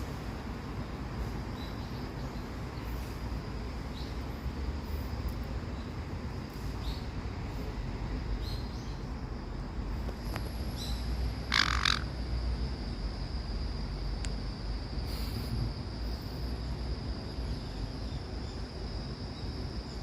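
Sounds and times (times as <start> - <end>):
parrot faint chirps: 10.8 - 12.1
parrot raspy squawk: 11.5 - 12.1.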